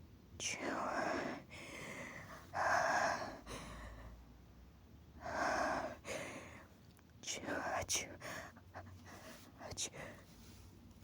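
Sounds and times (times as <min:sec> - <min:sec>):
sharp gasping breaths: 0:01.1 - 0:04.2, 0:05.2 - 0:06.7.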